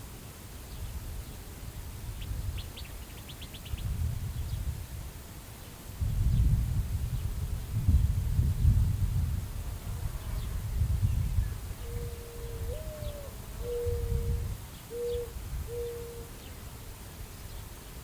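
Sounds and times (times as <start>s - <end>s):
wind rumbling on microphone: 0.7s - 18.0s
small birds chirping: 2.2s - 4.7s, 10.3s - 16.8s
mourning dove cooing: 11.8s - 16.7s.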